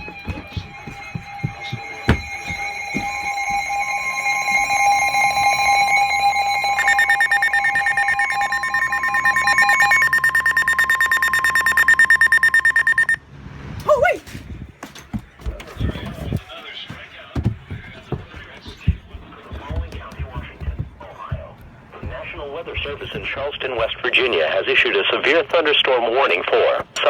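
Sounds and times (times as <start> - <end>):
electronic beeping tones: 0.0 - 13.2
fast pulsing alarm: 0.0 - 13.2.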